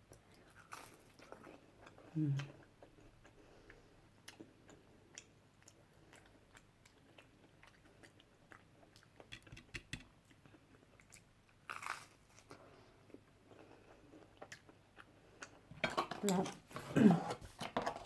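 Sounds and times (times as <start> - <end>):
person chewing food: 0.1 - 16.5
food crunch: 8.8 - 12.6.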